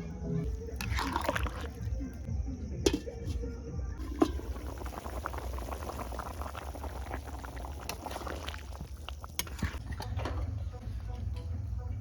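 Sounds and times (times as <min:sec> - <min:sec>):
curry bubbling in pan: 0:00.8 - 0:02.0, 0:04.0 - 0:10.1.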